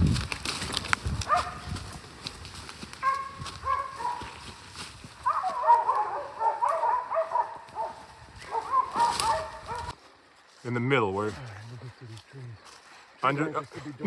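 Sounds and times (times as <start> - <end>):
dogs barking: 1.2 - 1.9, 2.9 - 4.5, 5.2 - 10.0.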